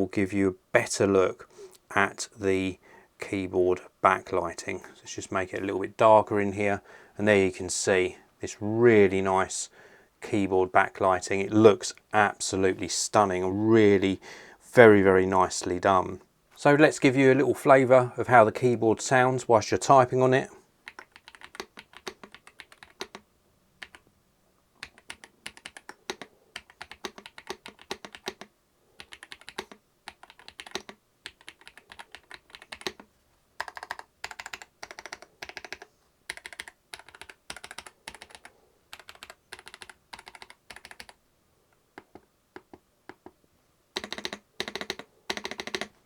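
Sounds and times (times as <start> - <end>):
mechanical keyboard typing: 20.8 - 23.2, 23.8 - 24.0, 24.8 - 41.2, 44.0 - 46.0.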